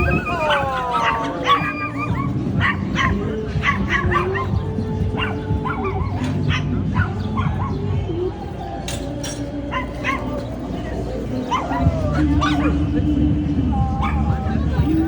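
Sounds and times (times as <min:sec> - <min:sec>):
dogs barking and yipping: 0:00.0 - 0:15.0.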